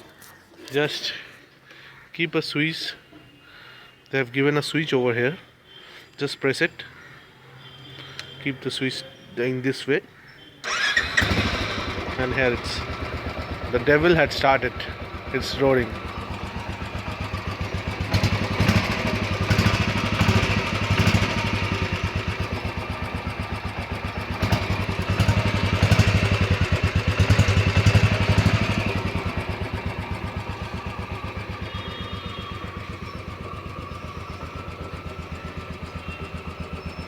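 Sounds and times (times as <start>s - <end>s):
motorcycle engine revving and idling: 10.6s - 37.0s.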